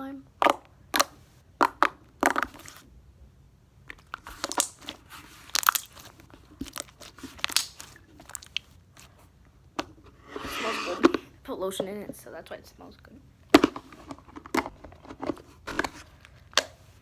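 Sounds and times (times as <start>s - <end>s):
slime squished by hand: 3.9s - 9.1s.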